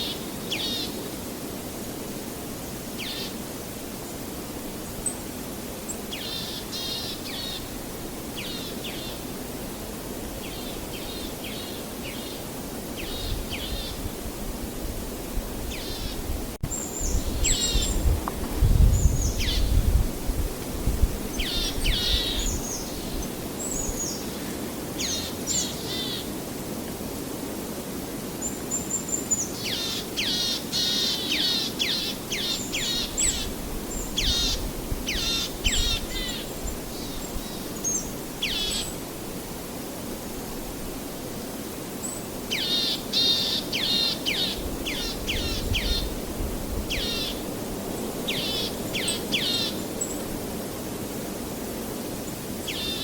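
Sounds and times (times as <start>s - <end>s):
outdoor hiss: 0.0s - 53.0s
small birds chirping: 42.0s - 46.2s.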